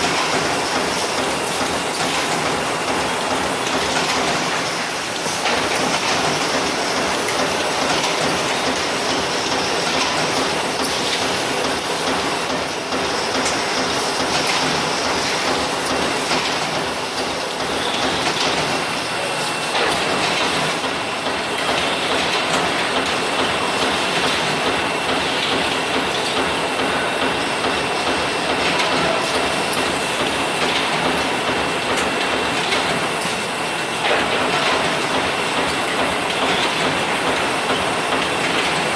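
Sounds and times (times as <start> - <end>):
machine mechanical clatter: 0.0 - 38.9.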